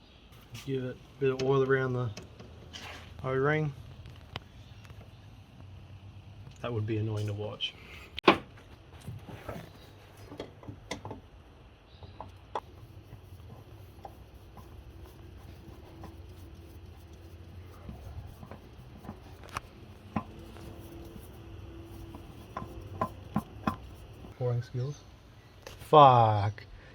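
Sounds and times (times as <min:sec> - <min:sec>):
low steady hum: 0:00.0 - 0:26.9
faint clicks and taps: 0:12.0 - 0:24.4.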